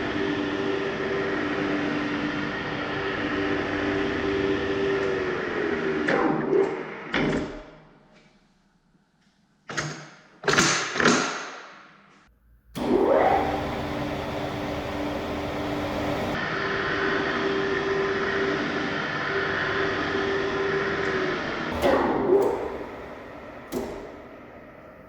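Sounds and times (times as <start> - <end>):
metal lathe running: 12.8 - 16.4, 21.7 - 25.0.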